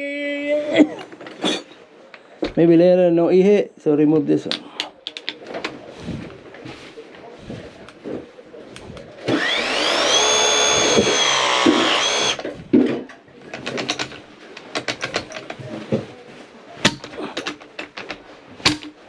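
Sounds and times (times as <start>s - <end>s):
tools clicking and knocking: 4.4s - 5.8s, 9.4s - 16.0s, 16.8s - 19.0s
power tool motor whining: 9.3s - 12.4s.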